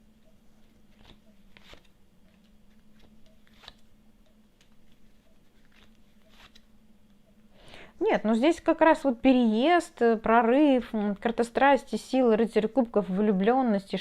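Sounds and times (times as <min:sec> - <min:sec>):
low steady hum: 0:00.0 - 0:14.0
cards clicking and rustling: 0:00.9 - 0:03.9, 0:04.6 - 0:06.7.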